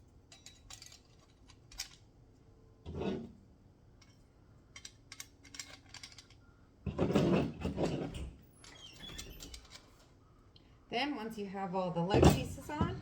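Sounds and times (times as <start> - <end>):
metal puzzle pieces clicking: 0.3 - 2.0, 4.8 - 6.4.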